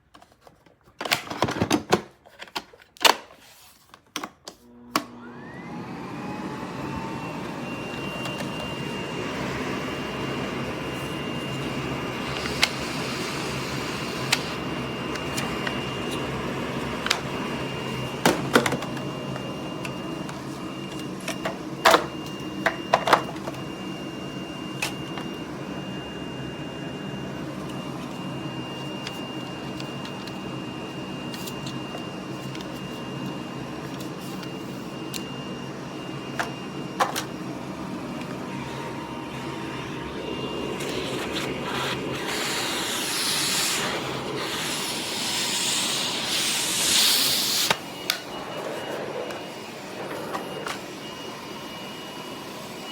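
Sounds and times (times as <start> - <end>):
vacuum cleaner motor whining: 4.6 - 52.9.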